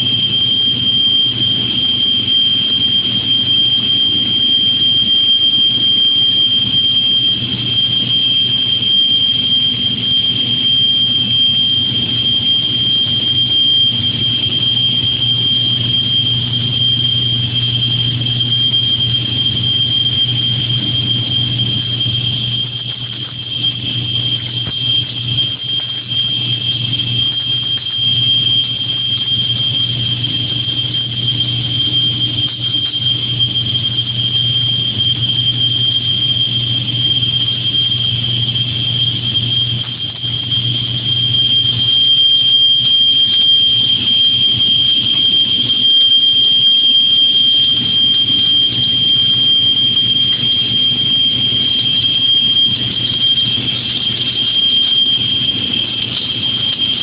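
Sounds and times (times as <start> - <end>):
welding machine whine and hum: 0.0 - 57.0.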